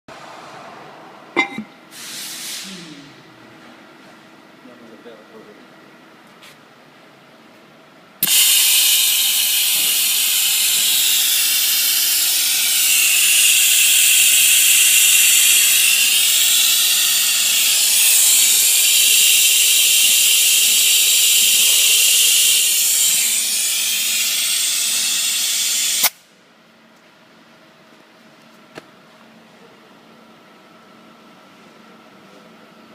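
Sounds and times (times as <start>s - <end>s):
loud hiss of rushing air: 1.9s - 2.8s.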